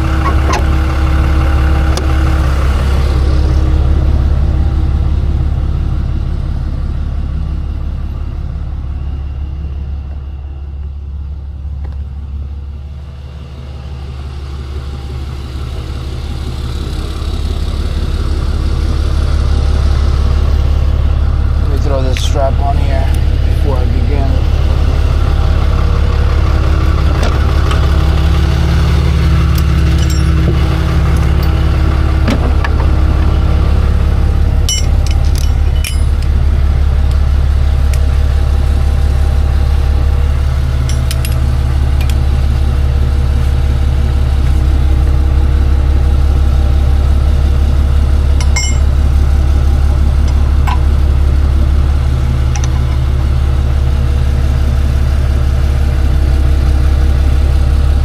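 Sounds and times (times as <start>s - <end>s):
truck engine idling: 0.0s - 58.0s
metallic clinks and taps: 29.5s - 31.5s, 34.7s - 36.3s, 48.4s - 48.8s.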